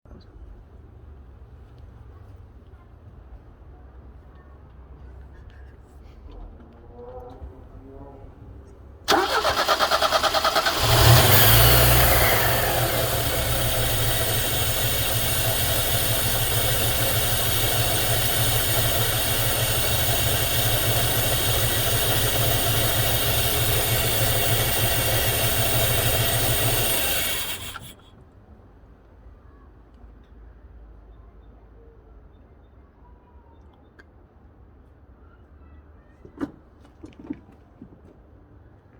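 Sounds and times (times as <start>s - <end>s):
car engine idling: 8.2s - 28.0s
engine starter cranking: 9.1s - 28.0s.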